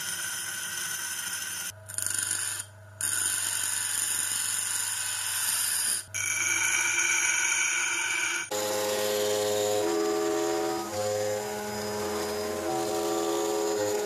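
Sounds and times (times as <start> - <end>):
grinding machine whining: 8.4 - 14.0
grinding scraping: 8.5 - 14.0.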